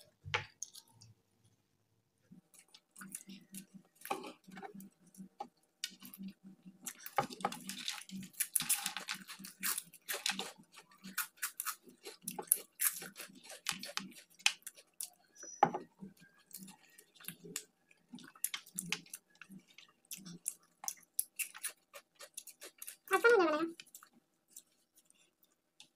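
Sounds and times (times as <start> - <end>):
people chewing and smacking: 2.3 - 23.1, 23.8 - 25.9.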